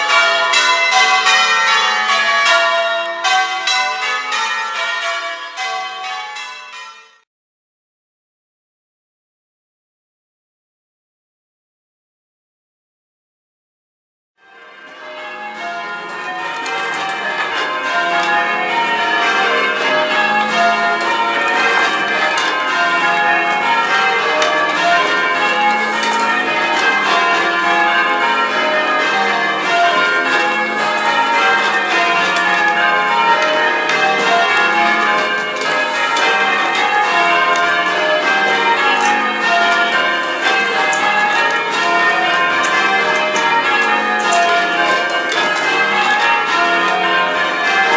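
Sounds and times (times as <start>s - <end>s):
church tower bells ringing: 0.0s - 7.3s, 14.4s - 47.9s.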